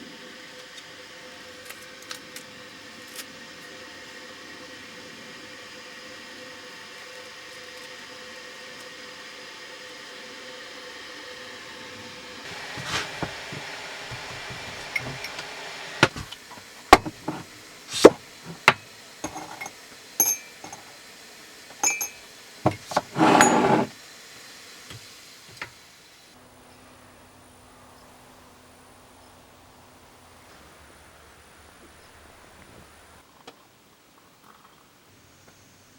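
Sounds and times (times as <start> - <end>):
kitchenware knocking and clinking: 12.8 - 15.4, 16.0 - 20.9, 21.7 - 23.9.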